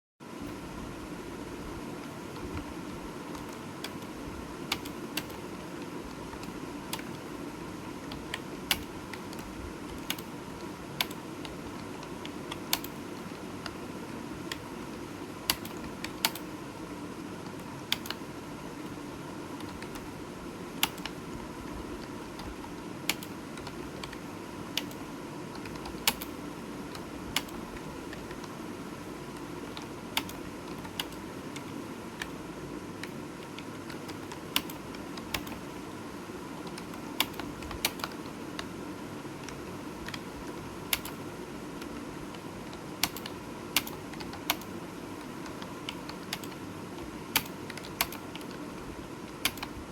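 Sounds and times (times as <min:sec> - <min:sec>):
background hiss and hum: 0:00.2 - 0:49.9
keyboard key clicks: 0:20.8 - 0:21.2, 0:33.0 - 0:35.7, 0:42.7 - 0:44.7, 0:47.4 - 0:48.6, 0:49.4 - 0:49.8.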